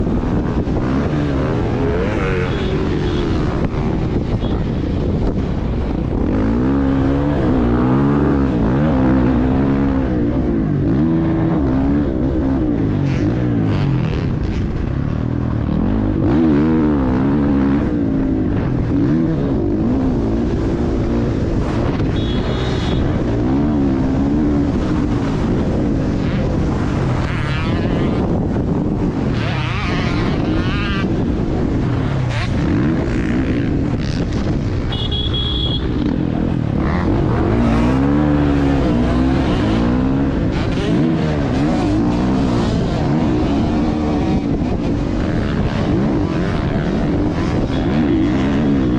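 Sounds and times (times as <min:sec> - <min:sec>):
dirt bike engine revving: 0:00.0 - 0:48.9
high-pitched horn honks: 0:22.1 - 0:23.2, 0:34.8 - 0:36.0.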